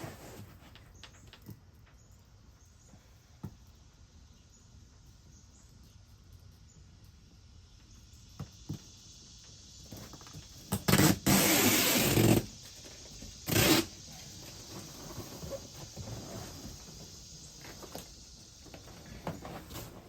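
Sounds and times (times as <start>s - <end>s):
velcro ripping: 10.8s - 12.5s, 13.5s - 13.9s.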